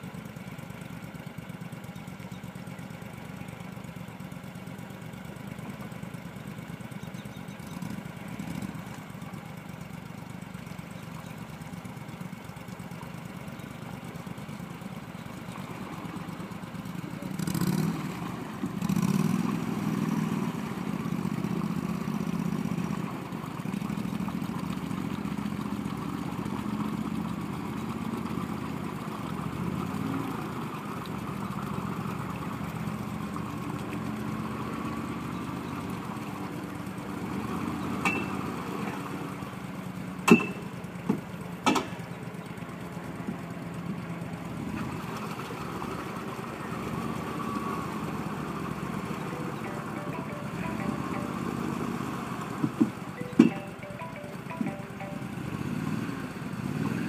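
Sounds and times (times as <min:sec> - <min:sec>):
atv engine running at low speed: 0:00.0 - 0:57.0.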